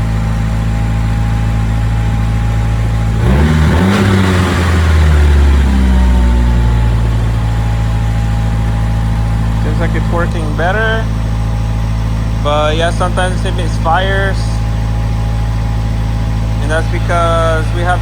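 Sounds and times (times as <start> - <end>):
car engine idling erratically: 0.0 - 18.0.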